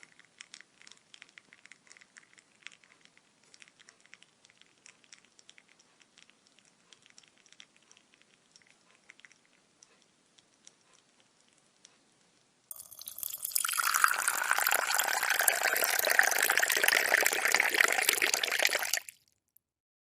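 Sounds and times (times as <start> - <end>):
liquid settling ticks and crackles: 0.0 - 11.9, 12.7 - 19.6
liquid pouring: 12.7 - 19.2.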